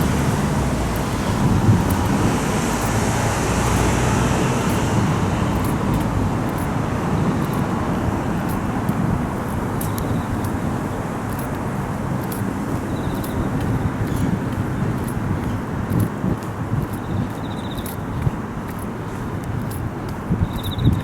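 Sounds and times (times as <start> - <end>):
tyre hiss of passing cars: 0.0 - 16.8
road traffic rumble: 0.0 - 21.0.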